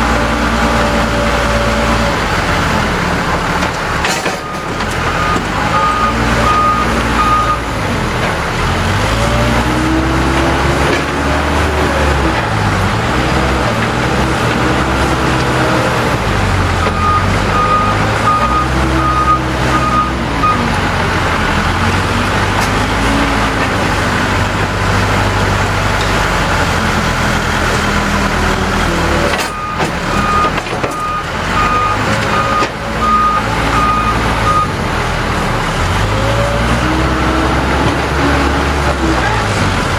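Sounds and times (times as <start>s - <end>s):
diesel engine working: 0.0s - 39.9s
reversing alarm beeping: 4.4s - 7.7s, 16.8s - 20.6s, 29.4s - 34.8s.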